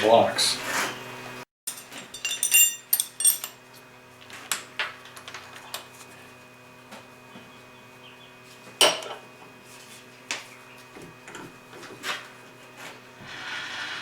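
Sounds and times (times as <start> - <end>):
steady shop hum: 0.0 - 13.6
metal blocks clinking together: 1.7 - 3.6.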